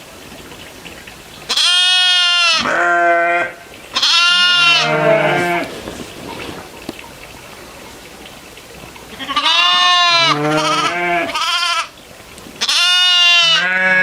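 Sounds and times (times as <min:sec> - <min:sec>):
goat bleating: 0:01.5 - 0:05.7, 0:09.1 - 0:11.9, 0:12.6 - 0:14.0.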